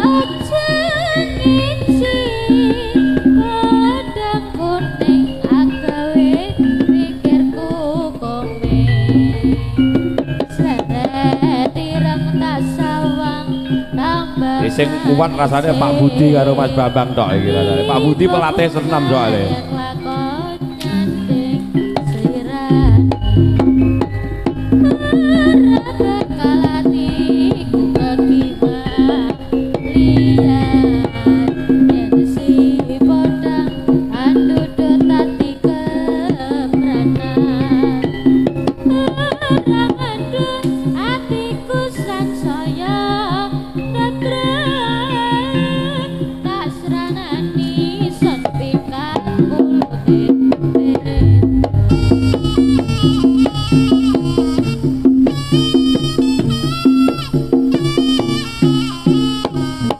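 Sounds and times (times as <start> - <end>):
ornamented melody over drone: 0.0 - 35.4, 51.2 - 55.2
drum strokes: 0.0 - 41.1, 51.1 - 59.9
deep bass: 22.8 - 24.9, 51.2 - 53.2
gong-like sustained tones: 22.8 - 28.4, 51.2 - 54.1.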